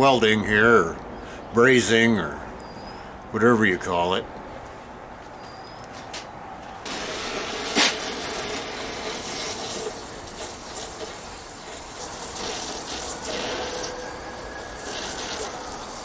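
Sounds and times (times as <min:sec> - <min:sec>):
torch flame hissing: 0:06.9 - 0:16.0.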